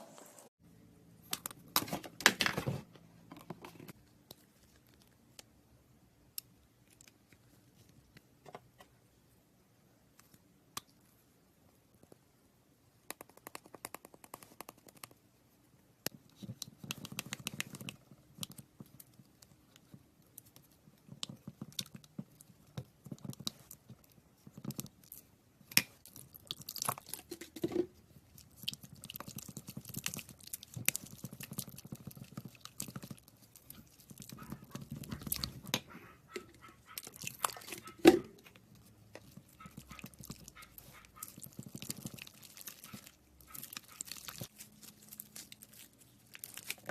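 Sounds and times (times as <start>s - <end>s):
slime squeezed crackling: 38.8s - 46.9s.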